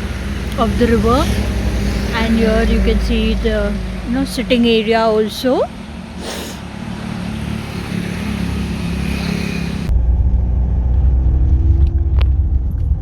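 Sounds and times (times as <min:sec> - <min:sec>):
road hiss: 0:00.0 - 0:09.9
car driving rumble: 0:00.0 - 0:13.0
car engine drone: 0:00.0 - 0:13.0.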